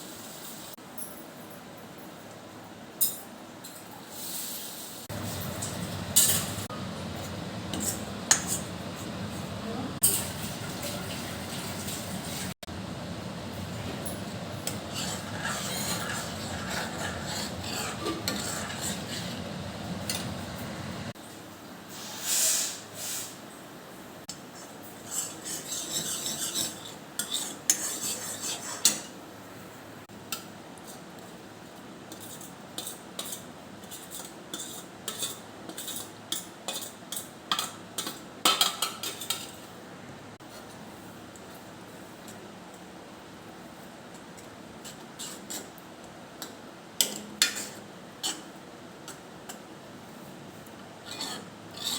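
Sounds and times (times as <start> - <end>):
steady hum: 5.1 - 10.8, 11.8 - 21.2
metal utensils scraping pots: 5.2 - 6.7, 14.6 - 20.4, 25.0 - 29.1, 51.0 - 51.9.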